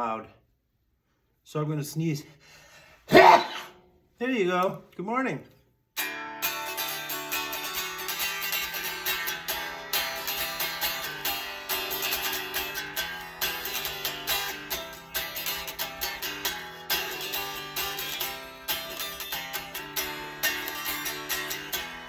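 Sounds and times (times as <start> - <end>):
unplugged electric guitar picking: 6.0 - 22.0.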